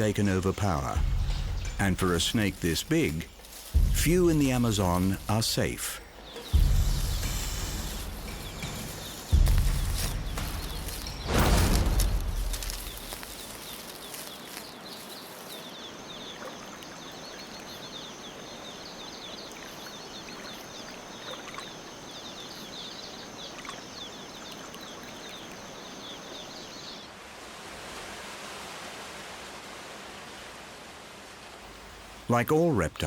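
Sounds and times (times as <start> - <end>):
constant hiss: 0.0 - 21.2, 21.8 - 33.0
rapid high chirping: 1.0 - 14.6
high whine of insect calls: 1.4 - 27.1.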